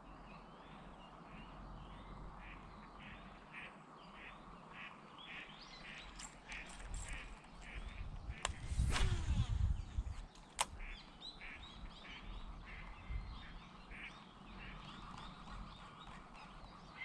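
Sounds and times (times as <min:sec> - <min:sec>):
low rumbling: 0:07.1 - 0:10.9
sharp click: 0:08.4 - 0:09.4, 0:10.2 - 0:10.8.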